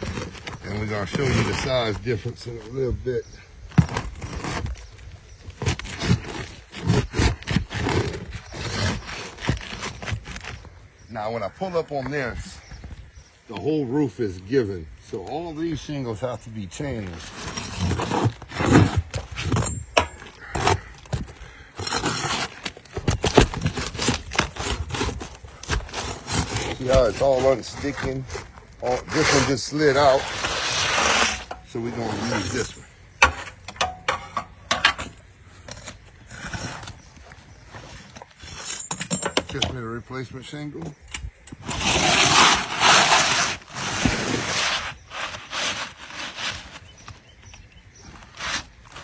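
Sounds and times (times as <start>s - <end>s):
roof shingles scraping: 0.0s - 2.9s, 3.7s - 11.8s, 15.3s - 33.7s, 34.9s - 39.0s, 41.6s - 49.0s.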